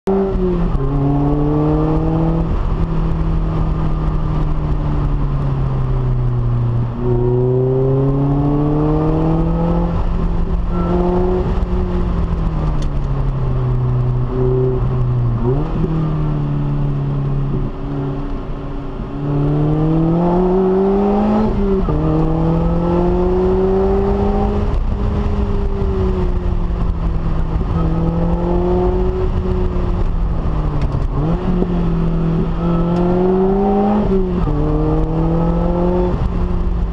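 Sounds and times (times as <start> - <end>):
car engine accelerating hard: 0.1 - 18.4, 19.0 - 36.9.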